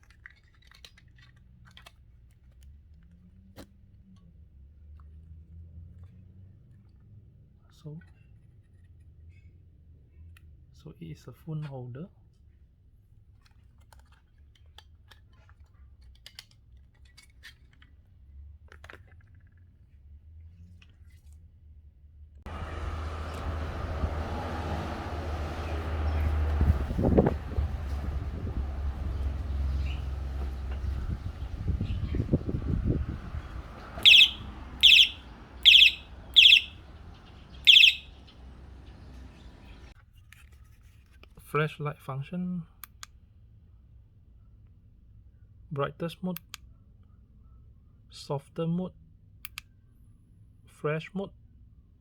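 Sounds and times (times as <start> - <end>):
electronic horn chirp-beeps: 34.0 - 36.8, 37.6 - 38.2.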